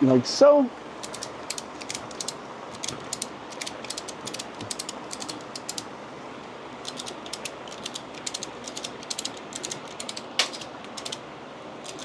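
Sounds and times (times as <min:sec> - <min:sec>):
ratchet strap clicking: 0:01.0 - 0:05.9, 0:06.8 - 0:11.2.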